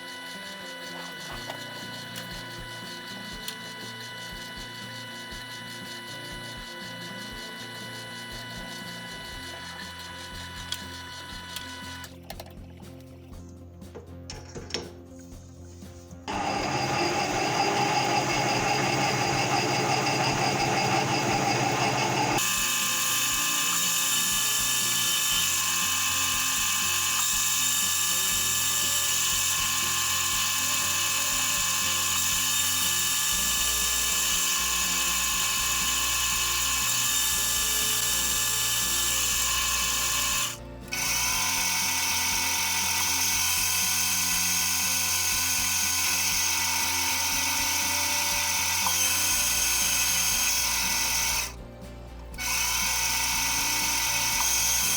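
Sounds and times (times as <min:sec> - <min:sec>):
machine tool cutting key: 0:18.2 - 0:51.5.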